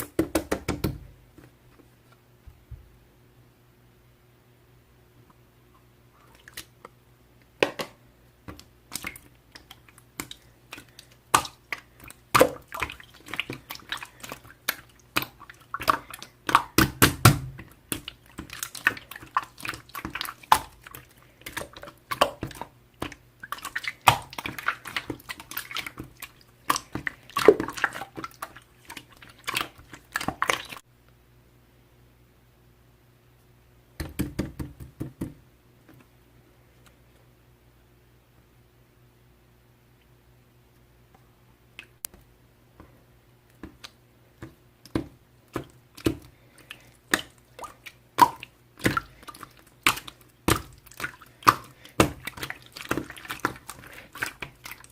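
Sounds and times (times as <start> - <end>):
slime squishing and popping: 8.6 - 30.8.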